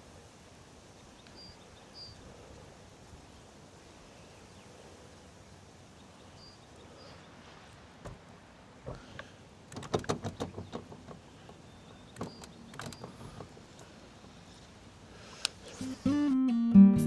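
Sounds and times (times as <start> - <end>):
faint wind noise: 0.0 - 16.2
small bird chirping: 1.0 - 2.3, 5.9 - 7.6, 10.2 - 14.7.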